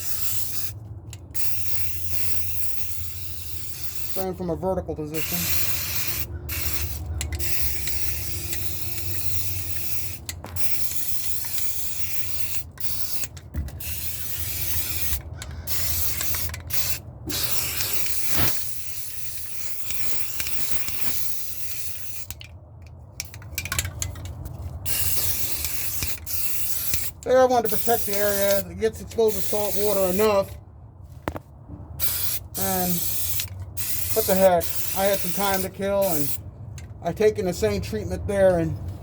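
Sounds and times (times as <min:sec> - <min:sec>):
aerosol spray can hissing: 0:00.0 - 0:00.8, 0:01.4 - 0:04.2, 0:05.2 - 0:22.3, 0:24.9 - 0:28.6, 0:29.3 - 0:30.3, 0:32.0 - 0:36.4.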